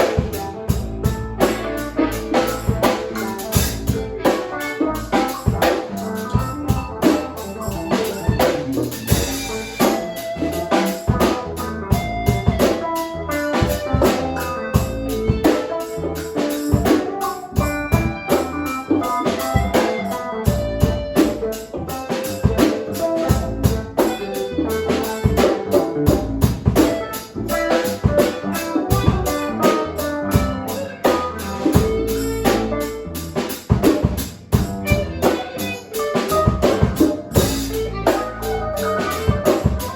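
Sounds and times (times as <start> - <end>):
pitched instrument notes: 0.0 - 26.2, 34.6 - 39.9
drum-kit beat: 0.0 - 39.9.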